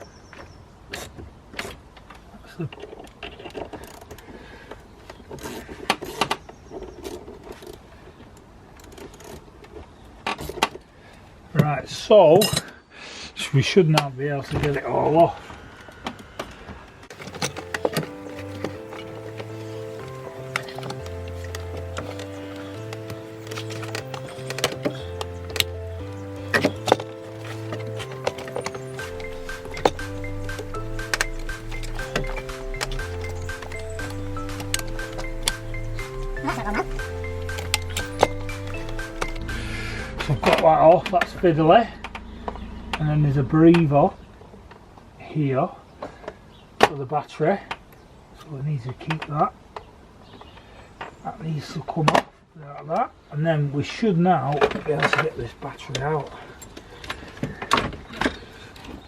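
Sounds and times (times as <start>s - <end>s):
metal tools clinking and knocking: 17.1s - 25.8s
sharp clicks: 17.1s - 41.4s
background music: 17.1s - 43.4s.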